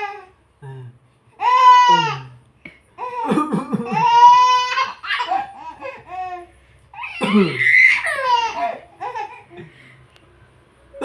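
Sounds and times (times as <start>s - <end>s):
baby laughing and squealing: 3.9s - 6.4s, 7.0s - 9.6s.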